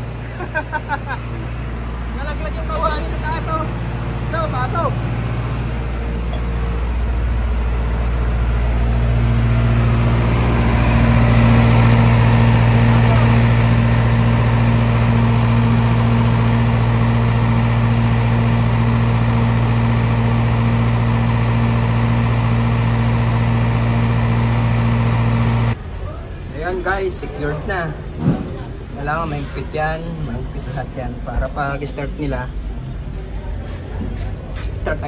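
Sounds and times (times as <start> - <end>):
diesel generator running: 0.0 - 35.0.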